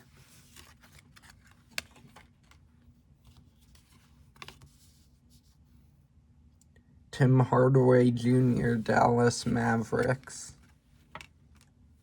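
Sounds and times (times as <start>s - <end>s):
trading cards rustling: 0.0s - 4.8s.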